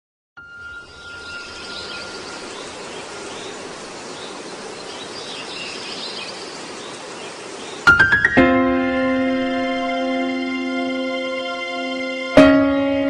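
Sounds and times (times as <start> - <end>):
faint high chirps: 0.4 - 3.7
outdoor ambient hiss: 0.5 - 12.4.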